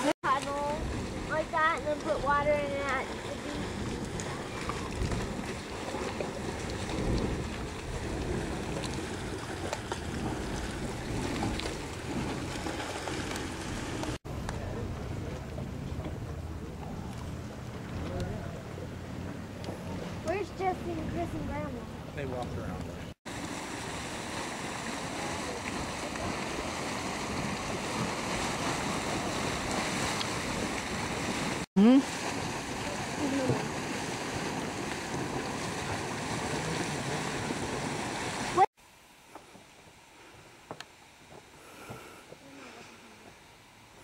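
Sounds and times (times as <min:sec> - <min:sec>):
wind buffeting microphone: 0:00.0 - 0:22.7
water churning and bubbling: 0:00.0 - 0:38.7.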